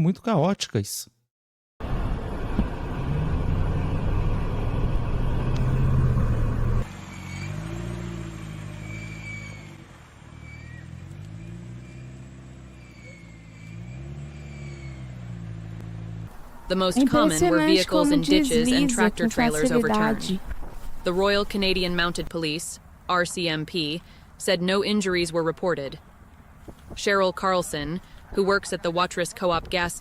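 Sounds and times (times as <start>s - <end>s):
engine revving: 1.8s - 20.4s
car engine running: 15.7s - 22.3s.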